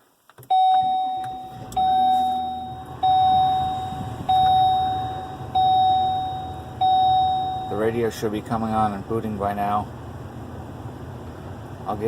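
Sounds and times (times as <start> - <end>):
car engine rumble: 0.0 - 12.0
dashboard warning chime: 0.5 - 8.2.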